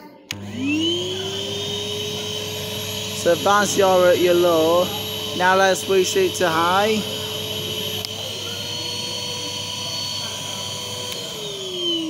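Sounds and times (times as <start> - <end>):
vacuum cleaner motor whining: 0.0 - 12.0
vacuum switch click: 11.0 - 11.3.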